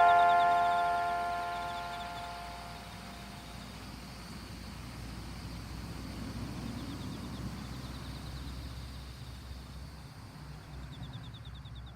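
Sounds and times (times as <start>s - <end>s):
rapid high trill: 0.0s - 3.6s
thin high whine: 0.0s - 4.0s.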